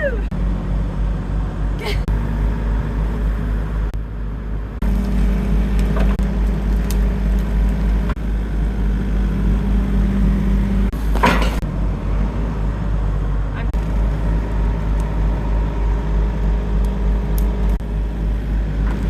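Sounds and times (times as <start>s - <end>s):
excavator diesel engine running: 0.0s - 19.0s.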